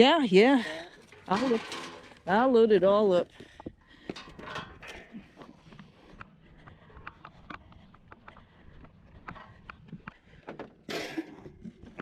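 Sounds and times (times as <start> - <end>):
items knocking and clattering: 1.1 - 2.3.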